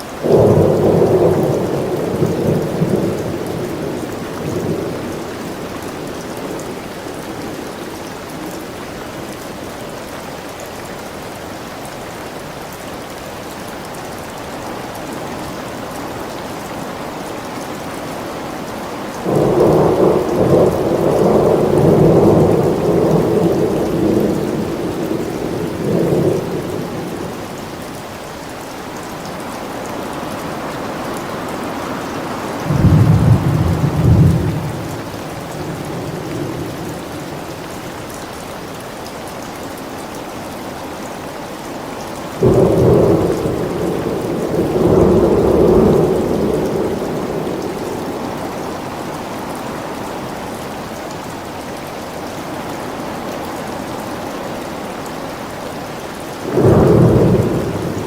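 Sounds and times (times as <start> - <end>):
heavy rain: 0.0 - 58.0
rolling thunder: 32.5 - 37.6, 42.4 - 48.3, 56.5 - 58.0.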